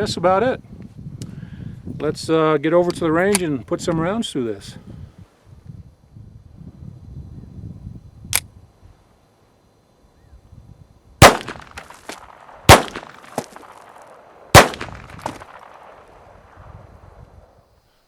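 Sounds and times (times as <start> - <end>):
sharp click: 8.3 - 8.5
pistol shots with echoes: 11.2 - 16.6.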